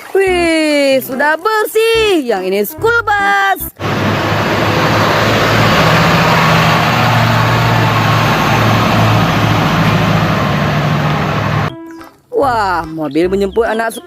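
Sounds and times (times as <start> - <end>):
bus engine running: 3.7 - 11.7
wide hiss: 3.8 - 11.7.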